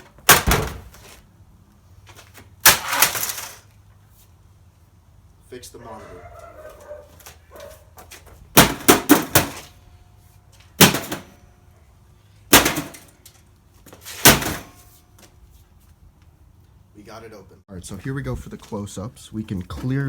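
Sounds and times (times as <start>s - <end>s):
heavy blows smashing a computer: 0.2s - 1.0s, 2.6s - 3.6s, 8.6s - 9.7s, 10.8s - 11.4s, 12.5s - 13.2s, 14.1s - 14.8s.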